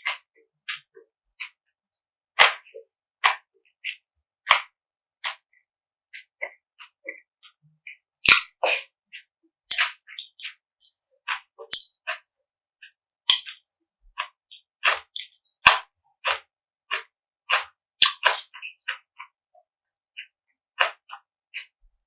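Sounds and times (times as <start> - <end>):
mouth clicks: 8.2 - 8.9, 9.7 - 11.0, 11.7 - 12.0, 13.3 - 13.7.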